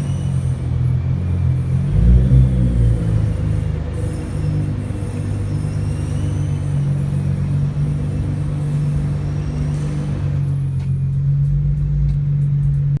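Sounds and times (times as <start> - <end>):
high-pitched brake squeal: 0.0 - 11.2
car engine at low revs: 0.0 - 13.0
light ticks: 10.8 - 12.9.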